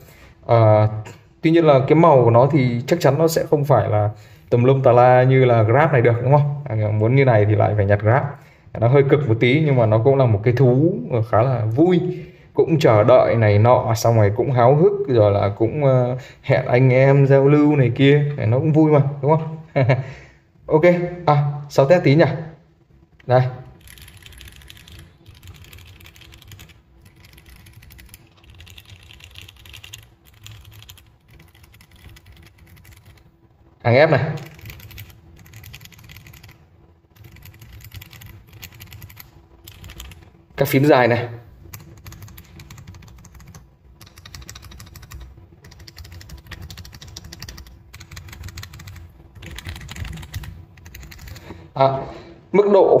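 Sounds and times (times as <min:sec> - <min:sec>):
rapid mechanical keyboard typing: 0:23.7 - 0:33.3, 0:34.2 - 0:40.9, 0:41.6 - 0:51.5.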